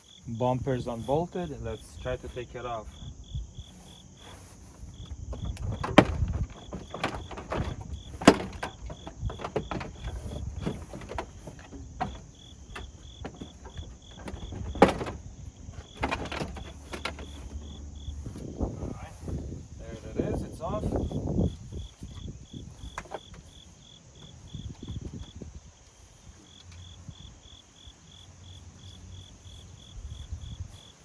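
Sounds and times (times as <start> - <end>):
plastic knocking and rubbing: 4.2 - 18.4.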